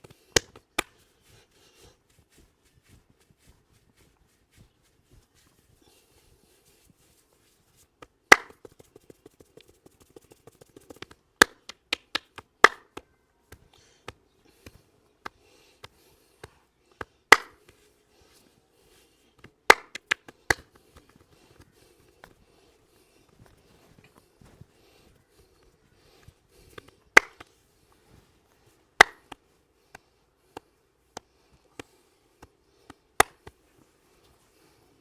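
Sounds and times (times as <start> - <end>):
hands slapping skin: 0.0 - 1.1, 8.0 - 17.9, 19.3 - 22.6, 26.5 - 27.6, 29.0 - 33.6
hands tapping: 8.0 - 17.8, 19.4 - 22.4.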